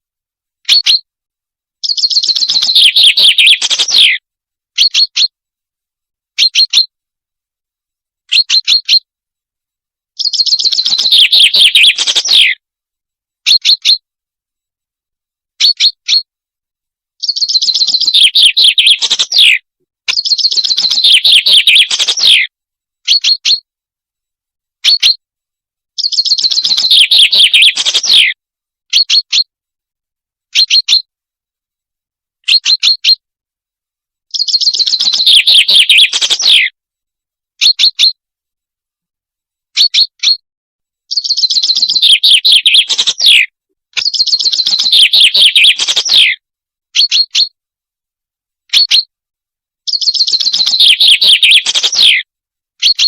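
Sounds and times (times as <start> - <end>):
bird song trills: 0.6 - 1.1, 1.8 - 4.2, 4.8 - 5.3, 6.4 - 6.9, 8.3 - 9.1, 10.2 - 12.6, 13.5 - 14.0, 15.6 - 16.3, 17.2 - 22.5, 23.1 - 23.6, 24.8 - 25.2, 26.0 - 29.5, 30.6 - 31.1, 32.4 - 33.2, 34.3 - 36.7, 37.6 - 38.2, 39.8 - 40.4, 41.1 - 46.4, 47.0 - 47.6, 49.9 - 52.2, 52.8 - 53.0
short bird chirps: 0.6 - 1.1, 1.8 - 4.2, 4.8 - 5.3, 6.4 - 6.9, 8.3 - 9.1, 10.2 - 12.6, 13.4 - 14.0, 15.6 - 16.3, 17.2 - 23.6, 26.0 - 29.5, 30.5 - 31.1, 32.4 - 33.2, 34.3 - 36.7, 37.6 - 38.2, 39.7 - 40.4, 41.1 - 46.4, 47.0 - 47.6, 49.9 - 52.2, 52.8 - 53.0.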